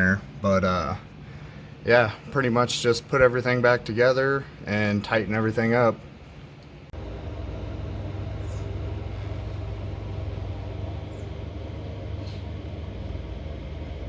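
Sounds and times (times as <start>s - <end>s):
car engine running steadily: 7.0s - 14.0s.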